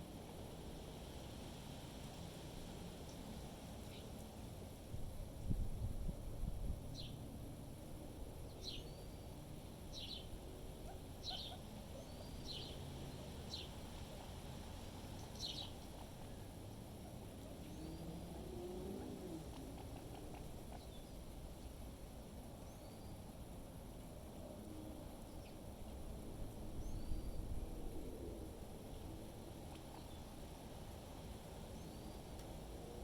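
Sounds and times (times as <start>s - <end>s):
low rumble of wind: 0.0s - 33.0s
songbird chirping: 8.4s - 14.4s, 15.0s - 22.0s.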